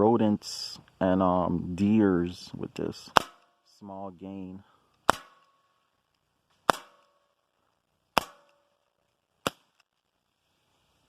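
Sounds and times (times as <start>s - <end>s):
pellet revolver shots: 3.1s - 3.6s, 5.0s - 5.6s, 6.6s - 7.3s, 8.1s - 8.8s.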